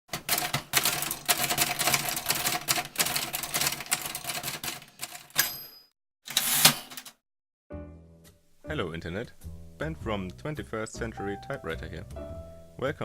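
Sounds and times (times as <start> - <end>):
manual typewriter typing: 0.1 - 5.7, 6.3 - 7.2
typewriter bell ring: 5.1 - 7.1.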